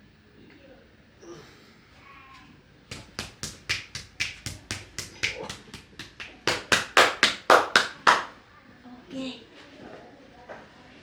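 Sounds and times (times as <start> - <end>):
rhythmic hand slaps: 2.9 - 8.4.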